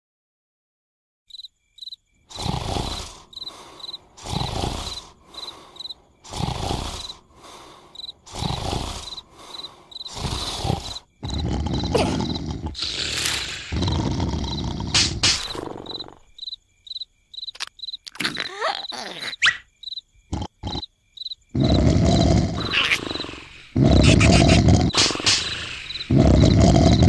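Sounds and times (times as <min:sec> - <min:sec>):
crickets chirping: 0:01.3 - 0:27.0
cartoon snoring: 0:02.3 - 0:16.4, 0:18.2 - 0:19.6, 0:20.3 - 0:20.9, 0:21.5 - 0:27.0.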